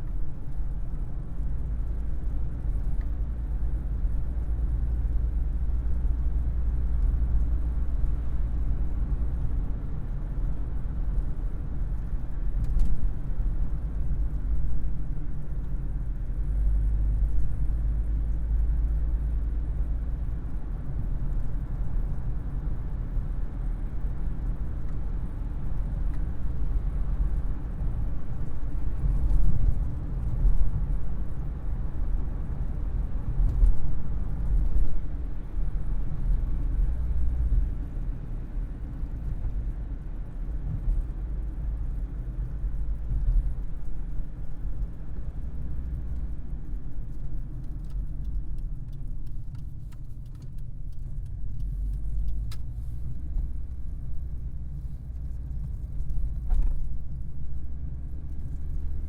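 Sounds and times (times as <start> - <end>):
car engine rumbling: 0.0 - 59.0.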